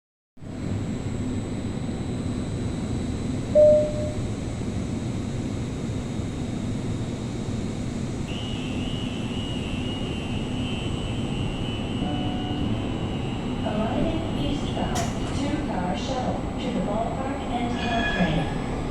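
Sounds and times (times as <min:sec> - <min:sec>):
high wavering whine: 0:03.4 - 0:04.4.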